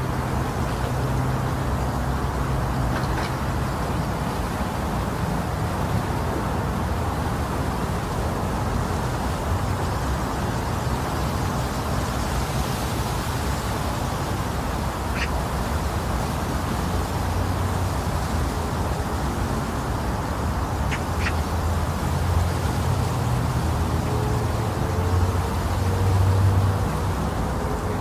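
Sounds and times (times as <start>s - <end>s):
rushing white noise: 0.0s - 28.0s.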